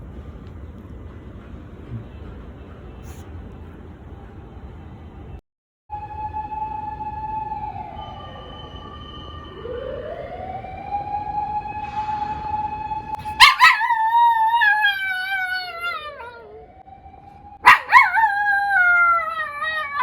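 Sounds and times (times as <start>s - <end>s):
wailing emergency siren: 5.9s - 20.0s
dog howling: 13.2s - 16.8s, 17.6s - 20.0s.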